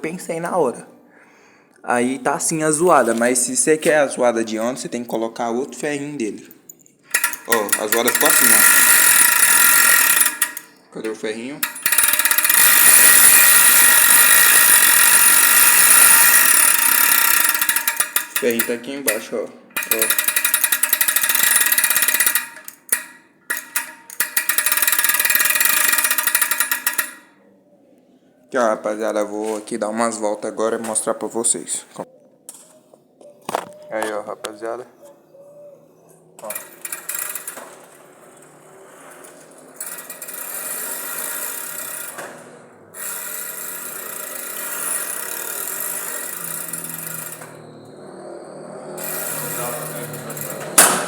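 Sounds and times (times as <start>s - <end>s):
bicycle freewheel ratchet clicking: 7.1s - 10.8s, 11.6s - 27.4s, 36.4s - 51.0s.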